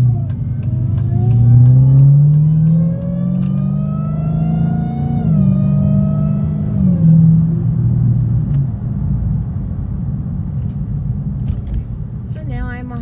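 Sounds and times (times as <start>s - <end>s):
light regular ticking: 0.0s - 3.8s
car engine accelerating: 0.0s - 11.5s.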